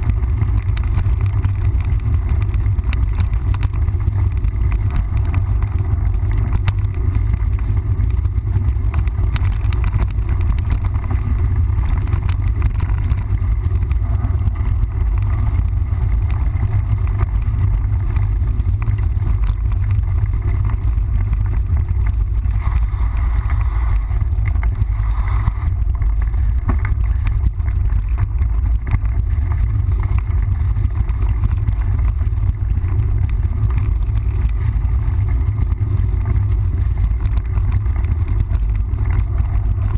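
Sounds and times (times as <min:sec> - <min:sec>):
bike clicks and rattles: 0:00.0 - 0:39.9
wind buffeting microphone: 0:00.0 - 0:39.9.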